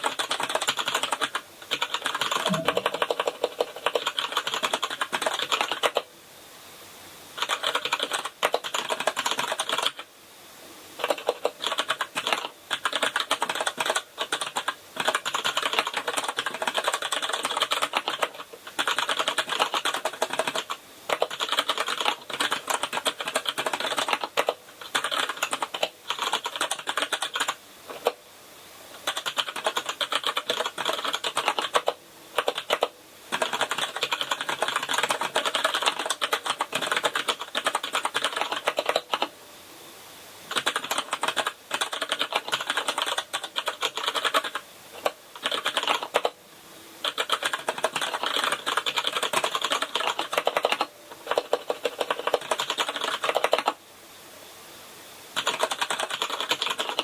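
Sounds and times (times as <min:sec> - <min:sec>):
keyboard key clicks: 0:00.3 - 0:06.0.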